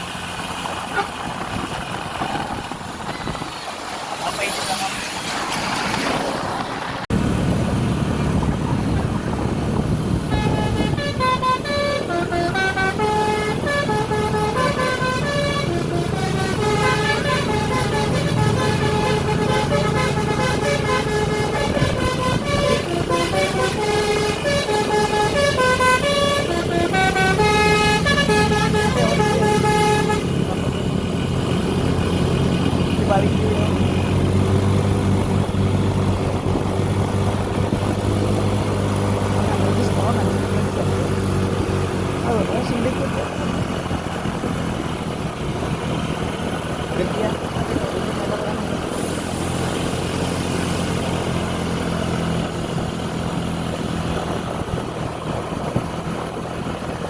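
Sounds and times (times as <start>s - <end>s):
bus engine running: 0.0s - 57.0s
bus horn playing a melody: 0.9s - 1.3s, 10.2s - 31.0s.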